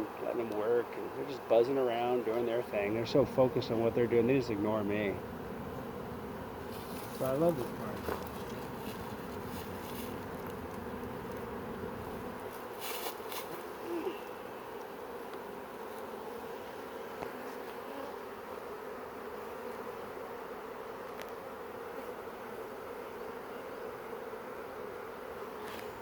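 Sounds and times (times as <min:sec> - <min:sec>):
honeybees buzzing: 0:00.0 - 0:26.0.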